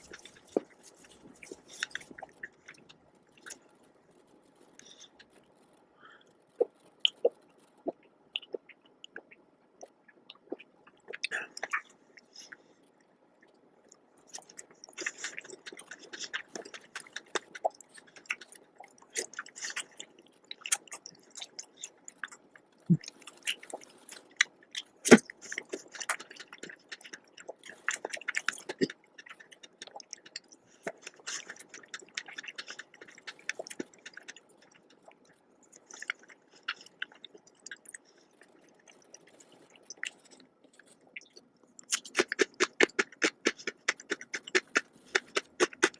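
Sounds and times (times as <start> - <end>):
wet chewing and mouth sounds: 0.0 - 45.9.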